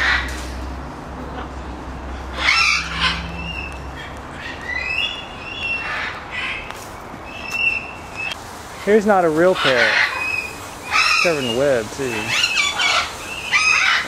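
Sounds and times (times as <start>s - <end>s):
parrot squawks: 2.3s - 6.6s, 9.5s - 14.0s.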